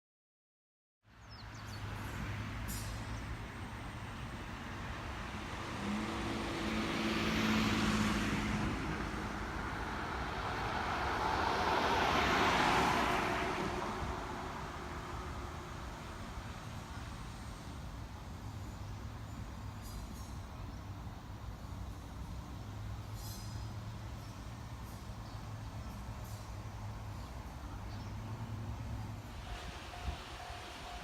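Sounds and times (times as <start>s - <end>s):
electric train passing: 1.9s - 31.0s.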